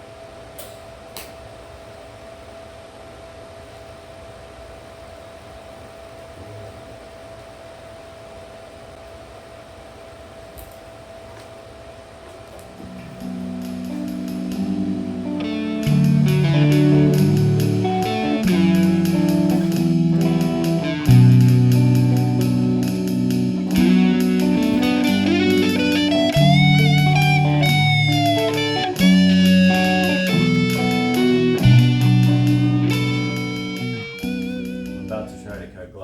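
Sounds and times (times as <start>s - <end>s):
electric guitar playing: 12.5s - 35.7s.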